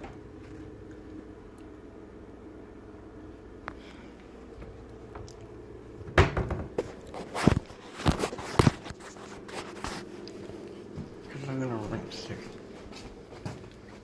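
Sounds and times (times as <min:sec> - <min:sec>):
loud thumps and knocks: 0:06.1 - 0:06.8.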